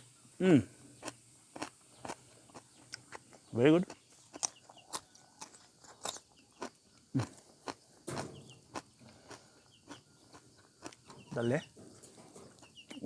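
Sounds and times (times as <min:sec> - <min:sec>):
person chewing crunchy food: 0:00.9 - 0:11.3.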